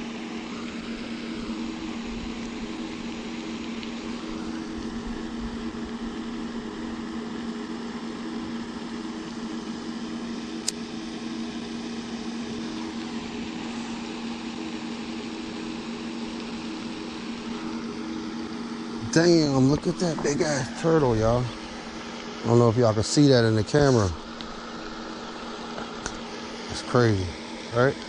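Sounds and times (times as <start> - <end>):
steady motor hum: 0.0 - 28.0
sharp click: 10.6 - 10.8.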